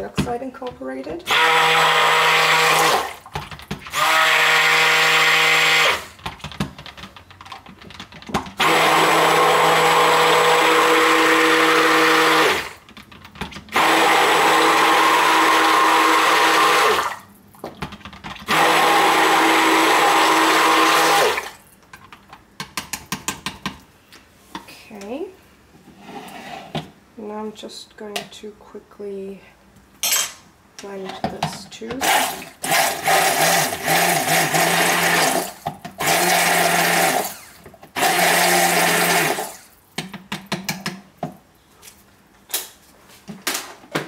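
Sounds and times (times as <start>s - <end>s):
stick blender motor whine: 1.3s - 3.1s, 3.9s - 6.1s, 8.6s - 12.7s, 13.7s - 17.2s, 18.5s - 21.5s, 32.0s - 39.6s.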